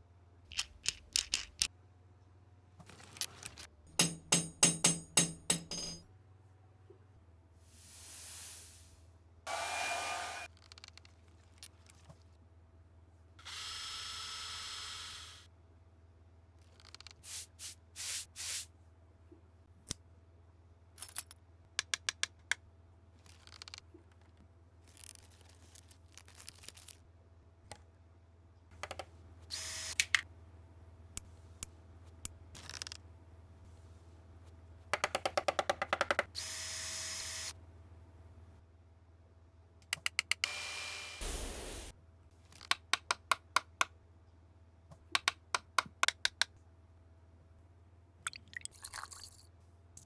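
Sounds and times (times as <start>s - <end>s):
clicks and knocks: 3.9s - 6.0s
small power tool motor: 9.5s - 10.5s, 13.4s - 15.4s, 36.3s - 37.6s, 40.4s - 41.9s.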